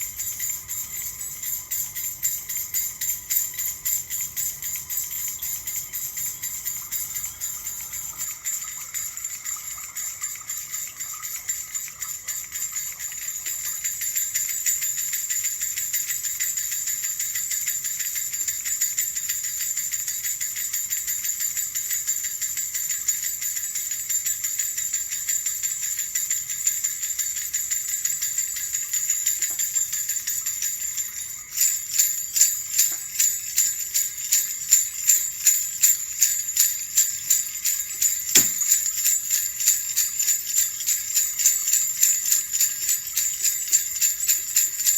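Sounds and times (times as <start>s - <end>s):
small bells jingling: 0.0s - 44.9s.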